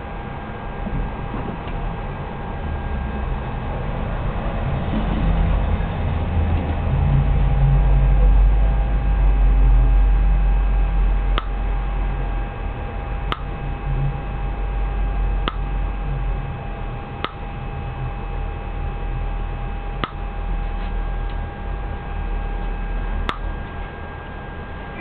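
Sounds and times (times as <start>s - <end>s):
steady electrical hum: 0.0s - 25.0s
high-voltage arc snaps: 20.0s - 20.4s.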